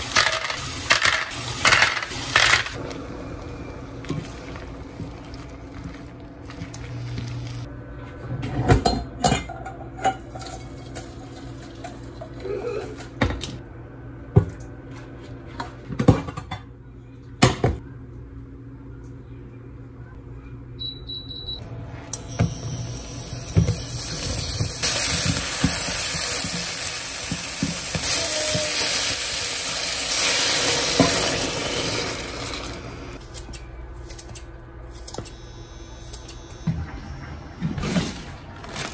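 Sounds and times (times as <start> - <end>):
pots and dishes clinking: 8.4 - 13.5.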